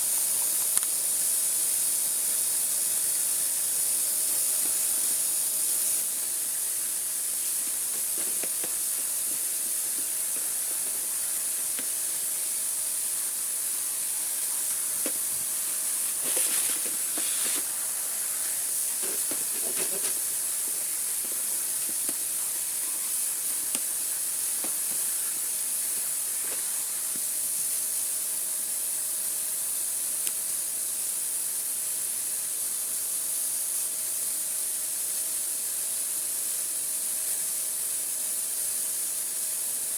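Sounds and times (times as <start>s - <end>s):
vacuum cleaner motor running: 0.0s - 28.9s
vacuum cleaner knocking and rattling: 7.6s - 12.0s, 15.0s - 17.7s, 19.0s - 22.5s, 23.5s - 25.4s.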